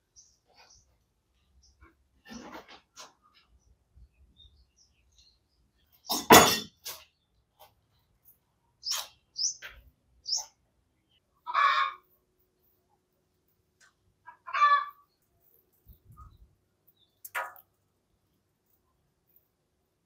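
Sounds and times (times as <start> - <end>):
high bird chirps: 8.8 - 10.6.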